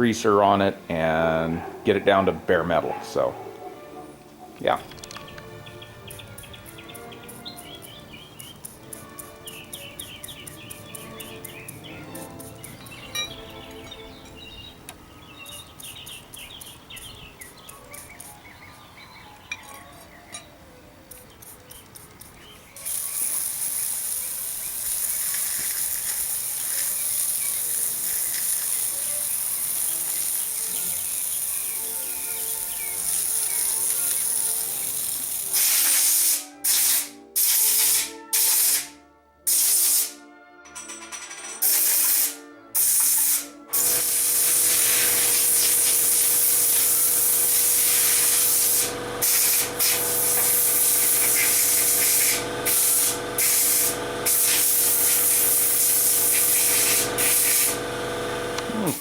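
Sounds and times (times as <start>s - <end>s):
quiet music: 0.0s - 57.6s
pressure spray hissing: 22.8s - 38.9s, 39.5s - 40.2s, 41.6s - 59.0s.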